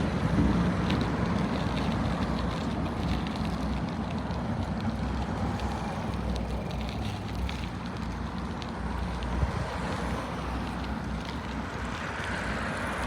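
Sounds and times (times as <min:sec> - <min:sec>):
bicycle rolling: 0:00.0 - 0:13.0
light ticks and rattles: 0:00.0 - 0:13.0.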